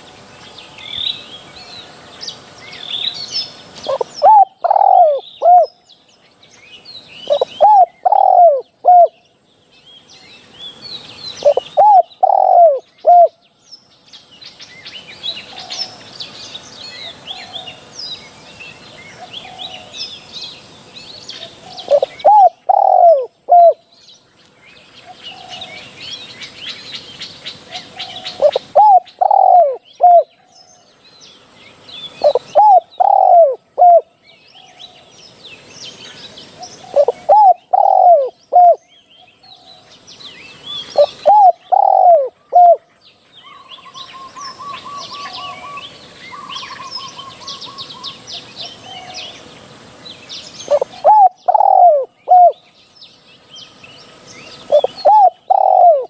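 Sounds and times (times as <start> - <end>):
small birds chirping: 0.0 - 56.0
dove cooing: 3.8 - 5.7, 7.2 - 9.2, 11.4 - 13.4, 21.4 - 23.8, 27.7 - 30.3, 32.2 - 34.1, 36.6 - 38.8, 40.9 - 42.8, 50.7 - 52.6, 54.6 - 56.0
fast bird trill: 11.4 - 13.3, 28.3 - 30.2, 32.2 - 34.0, 54.7 - 56.0.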